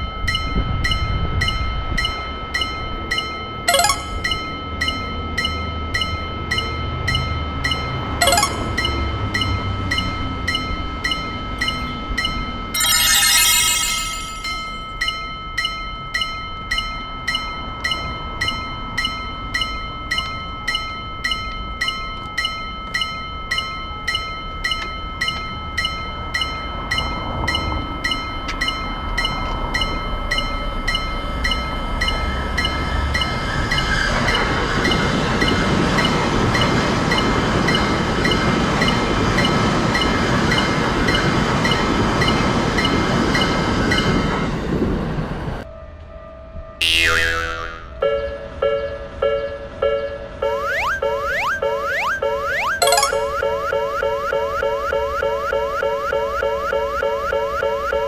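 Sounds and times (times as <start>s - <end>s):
railroad crossing bell ringing: 0.0s - 33.8s, 48.0s - 58.0s
loud shrill sound: 12.8s - 14.8s.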